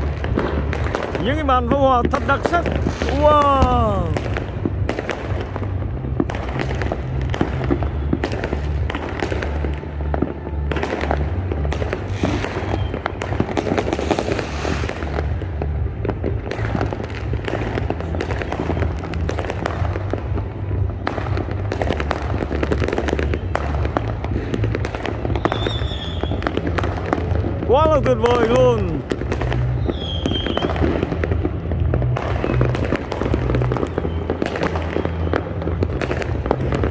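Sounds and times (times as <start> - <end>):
fireworks bangs and crackles: 0.0 - 36.9.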